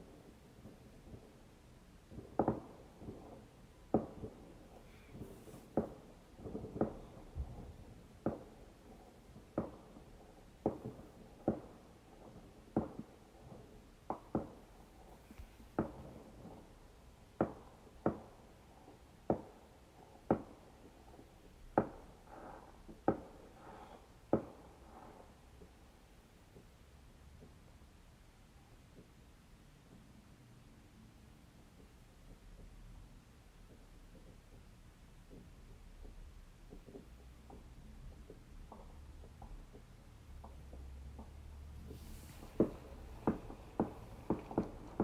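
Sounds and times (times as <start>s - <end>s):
fireworks exploding: 0.0s - 25.4s, 36.8s - 45.0s.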